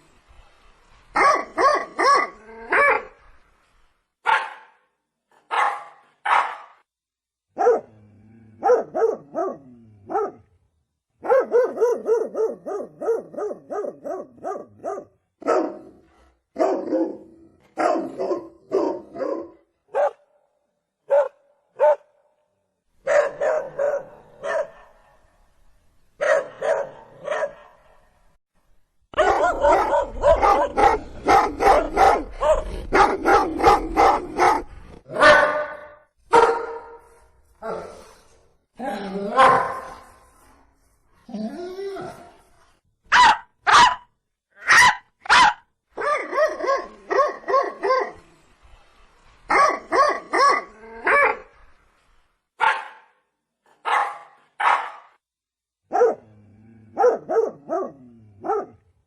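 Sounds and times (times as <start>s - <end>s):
dog barking: 1.2s - 3.1s, 4.2s - 4.9s, 5.5s - 6.8s, 7.6s - 7.9s, 8.6s - 10.4s, 11.2s - 16.0s, 16.6s - 20.3s, 21.1s - 22.2s, 23.0s - 25.2s, 26.2s - 28.0s, 29.1s - 37.1s, 39.4s - 40.0s, 43.1s - 48.2s, 49.5s - 51.4s, 52.6s - 53.2s, 53.8s - 55.2s, 55.9s - 56.3s, 57.0s - 58.8s.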